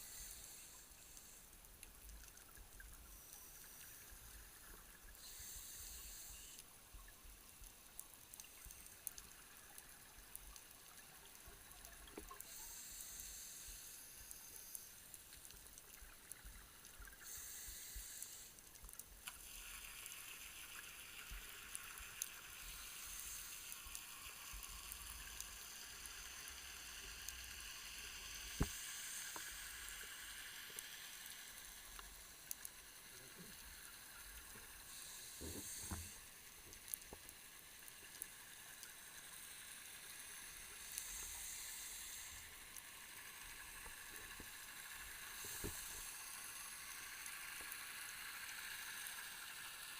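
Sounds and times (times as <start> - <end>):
faint clicks: 0.2 - 49.9
diver breathing through regulator: 5.2 - 6.6, 17.2 - 18.6, 34.9 - 36.2.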